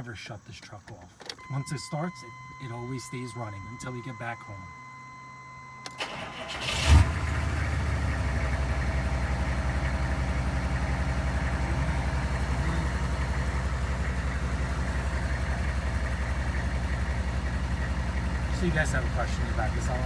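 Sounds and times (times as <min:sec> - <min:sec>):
diesel engine starting and idling: 0:01.4 - 0:20.0
engine clacking: 0:06.0 - 0:20.0.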